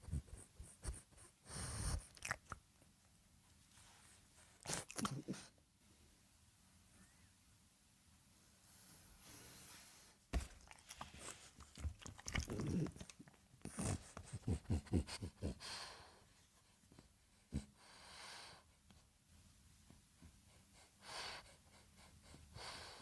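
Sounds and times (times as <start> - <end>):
dog breathing through nose: 1.4 - 2.4
dog chewing and crunching food: 2.0 - 2.6, 10.4 - 14.4.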